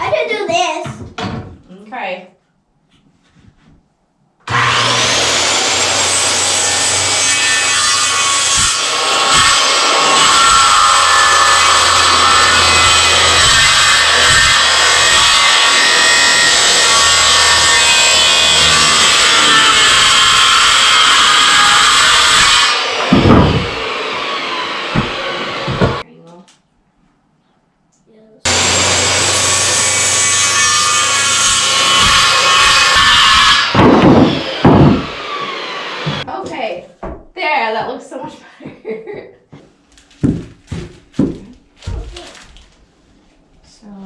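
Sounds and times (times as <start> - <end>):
power tool cutting wood: 4.5 - 26.0, 28.5 - 36.3.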